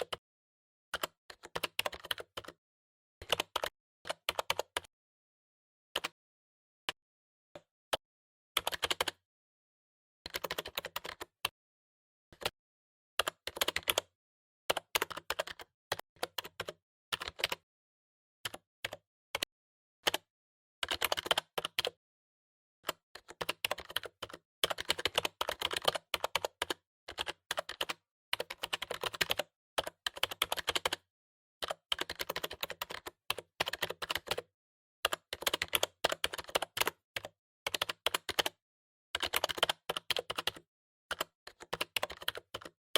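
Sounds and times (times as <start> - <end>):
computer keyboard typing: 1.0 - 2.6, 3.2 - 4.9, 8.6 - 9.2, 10.3 - 11.4, 13.2 - 14.1, 14.7 - 17.6, 20.1 - 22.0, 22.9 - 31.0, 31.6 - 38.6, 39.2 - 42.8.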